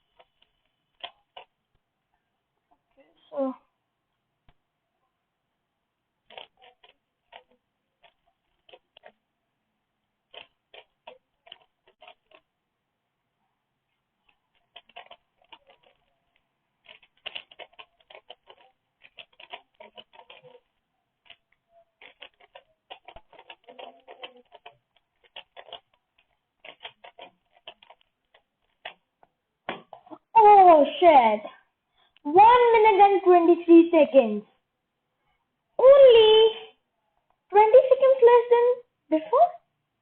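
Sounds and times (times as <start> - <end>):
puzzle cube clicking: 6.2 - 9.2, 10.2 - 12.5, 14.3 - 30.0.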